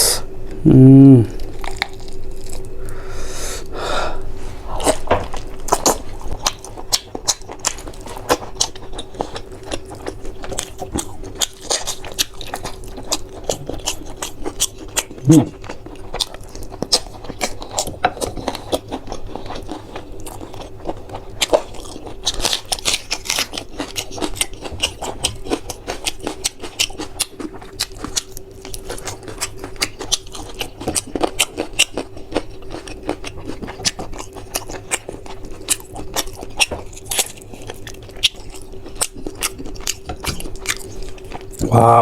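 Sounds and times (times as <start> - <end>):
faint steady hum: 0.0 - 42.0
person chewing with wet smacks: 4.8 - 41.7.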